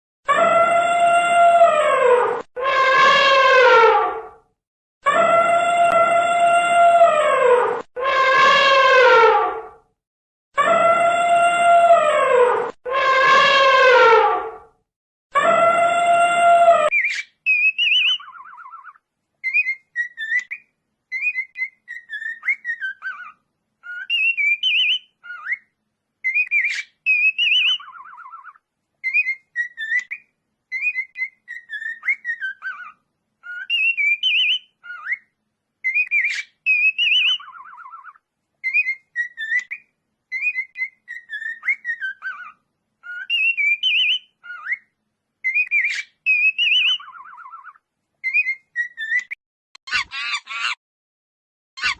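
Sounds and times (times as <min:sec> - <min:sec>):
low-pitched animal call: 0:00.3 - 0:04.4, 0:05.1 - 0:09.8, 0:10.6 - 0:14.6.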